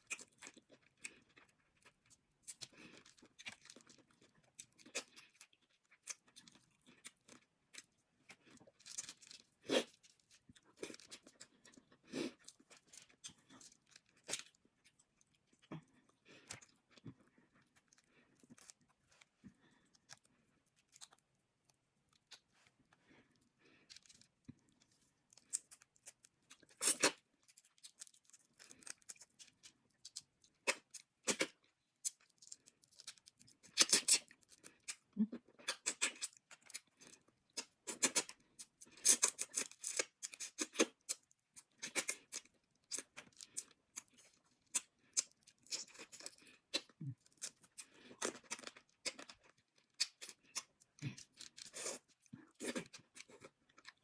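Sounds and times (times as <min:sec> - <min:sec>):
chewing: 0:00.0 - 0:54.0.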